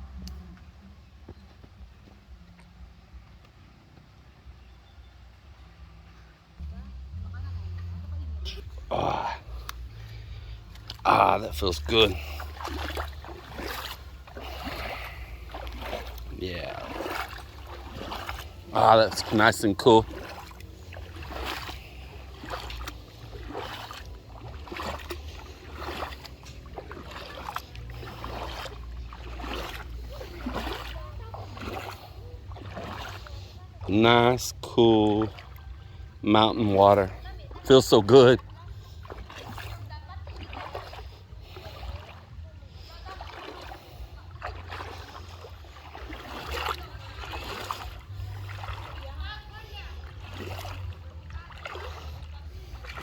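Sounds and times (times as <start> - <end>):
river water splashing: 0.0 - 53.0
steady low rumble: 0.0 - 53.0.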